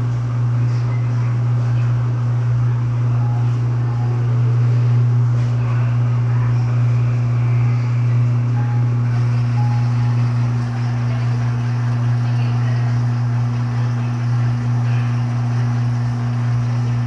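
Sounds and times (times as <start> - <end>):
washing machine humming: 0.0 - 17.0.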